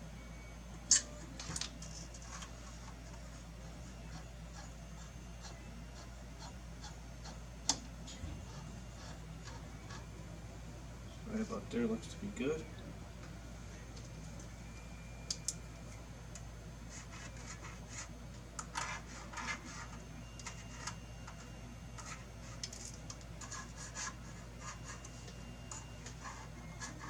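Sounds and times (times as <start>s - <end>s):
steady low hum: 0.0s - 27.0s
pen scratching: 4.1s - 7.4s, 8.5s - 10.1s, 16.9s - 18.1s, 18.7s - 20.9s, 22.0s - 25.2s, 26.0s - 27.0s.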